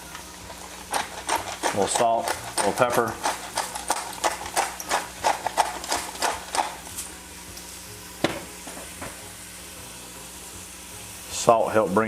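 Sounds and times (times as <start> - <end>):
soft sizzle: 0.0 - 12.0
utensil scraping metal pot: 0.5 - 6.8.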